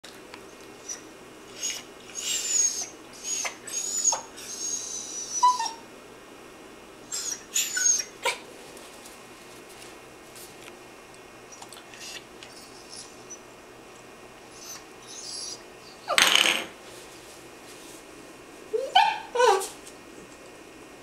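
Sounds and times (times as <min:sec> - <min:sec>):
puppy whining: 0:00.5 - 0:05.9, 0:07.1 - 0:08.5, 0:11.5 - 0:13.5, 0:14.5 - 0:16.4, 0:18.7 - 0:19.8.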